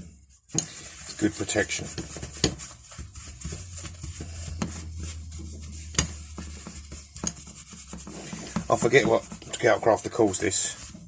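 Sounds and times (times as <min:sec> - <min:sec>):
paper towel rubbing metal: 0:00.0 - 0:11.0
low steady hum: 0:02.2 - 0:09.6.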